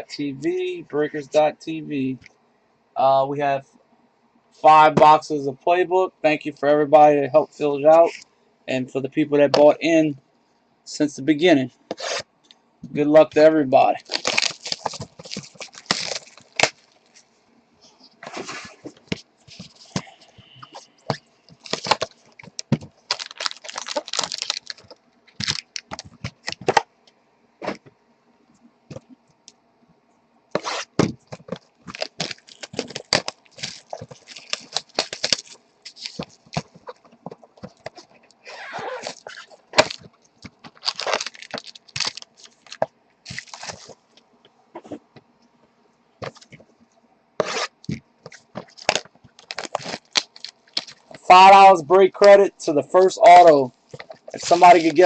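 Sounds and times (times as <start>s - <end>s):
plastic wrap crinkling: 14.0s - 17.3s, 20.7s - 26.8s, 30.6s - 44.1s, 47.4s - 51.3s, 53.7s - 55.0s.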